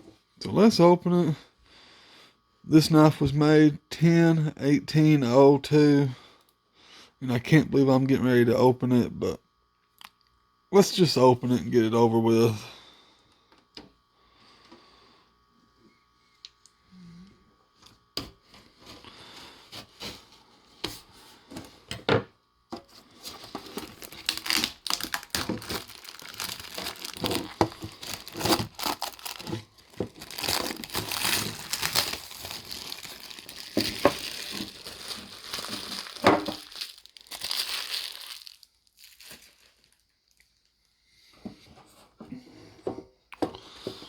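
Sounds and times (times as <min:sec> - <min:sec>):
plastic packaging crinkling and tearing: 0:22.9 - 0:40.6.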